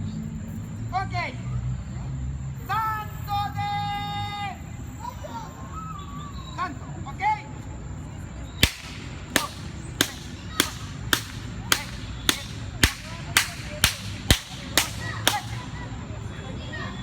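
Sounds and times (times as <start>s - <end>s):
sharp ringing cracks: 8.6s - 15.8s.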